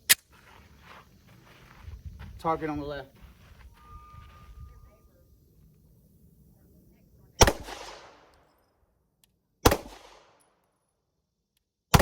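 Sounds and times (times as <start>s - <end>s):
pistol shots with echo: 7.4s - 8.4s, 9.6s - 10.5s.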